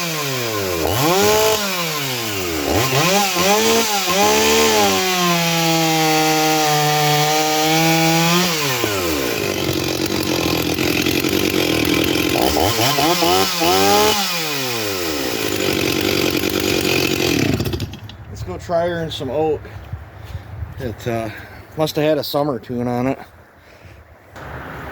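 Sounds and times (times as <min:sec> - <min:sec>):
chainsaw engine revving and idling: 0:00.0 - 0:18.5.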